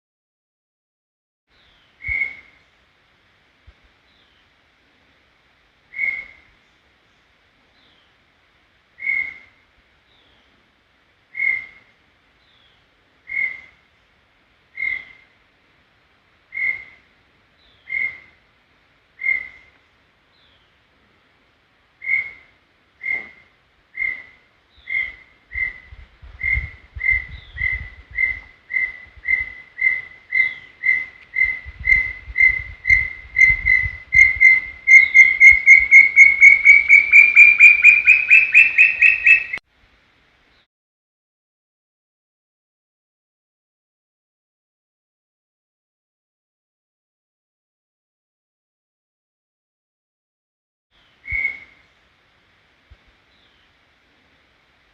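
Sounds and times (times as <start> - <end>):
bird whistling notes: 2.0 - 2.5, 24.0 - 39.6, 51.2 - 51.8.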